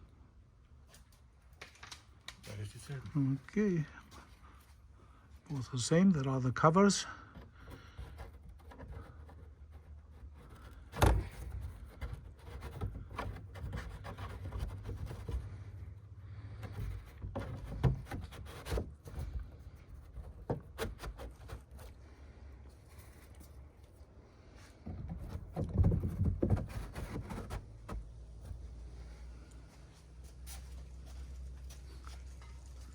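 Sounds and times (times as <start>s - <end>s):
panels knocking and clunking: 7.0s - 22.1s, 24.7s - 28.7s.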